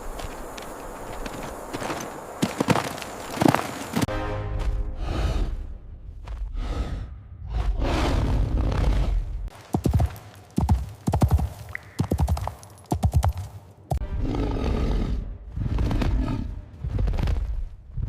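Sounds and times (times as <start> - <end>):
sharp knocks like hoofbeats: 9.5 - 14.0.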